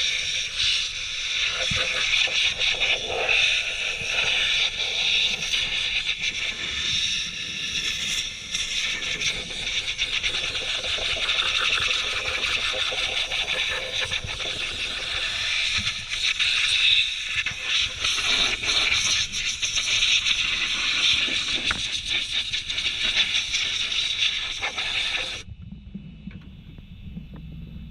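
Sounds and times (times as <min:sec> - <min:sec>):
low rumble: 0:25.5 - 0:27.9.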